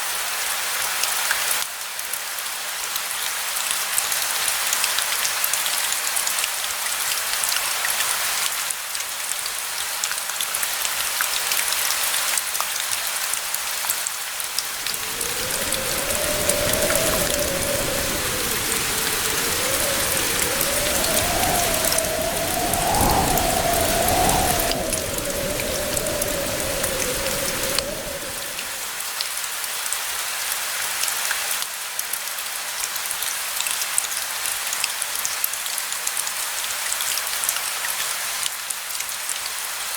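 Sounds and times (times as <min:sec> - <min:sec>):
steady rain hissing: 0:14.4 - 0:29.2
distant thunder rumbling: 0:14.8 - 0:28.9.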